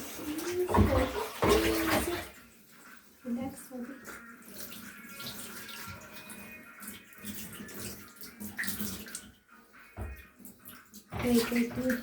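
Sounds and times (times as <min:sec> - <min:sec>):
water splashing in a tub: 0:00.0 - 0:12.0.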